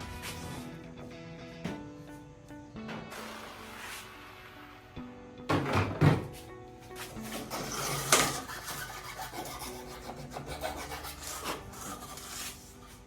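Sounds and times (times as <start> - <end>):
hand saw cutting wood: 7.2 - 13.0.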